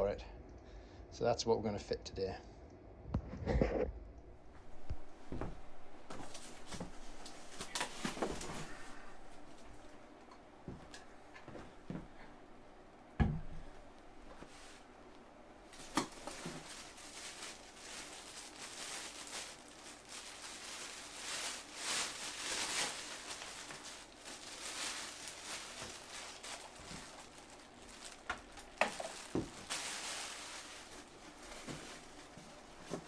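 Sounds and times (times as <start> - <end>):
packaging rustling: 6.1 - 9.9, 15.7 - 33.0.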